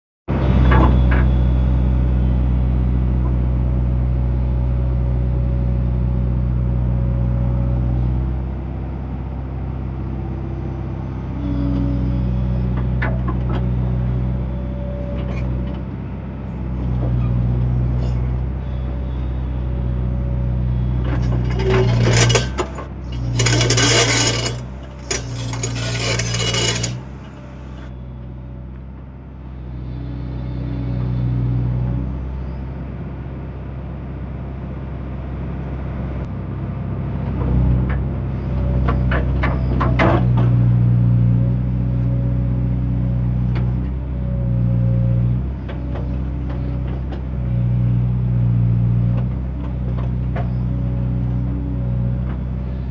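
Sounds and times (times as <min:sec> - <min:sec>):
loud scraping and clattering: 0:20.2 - 0:27.9.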